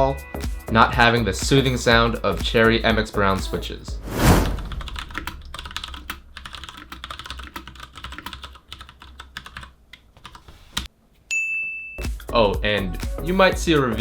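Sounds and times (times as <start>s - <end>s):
computer keyboard typing: 5.8s - 10.5s.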